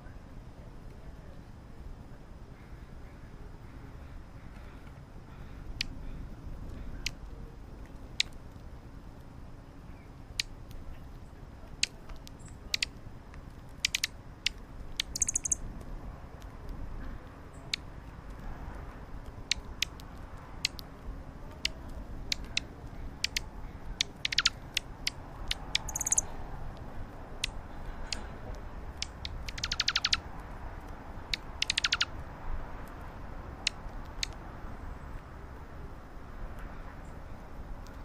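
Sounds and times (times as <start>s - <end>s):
beaks pecking: 10.3s - 16.5s, 17.6s - 32.2s, 33.6s - 34.4s
bird chirp: 13.8s - 15.6s, 22.3s - 26.4s, 29.0s - 30.2s, 31.3s - 32.2s.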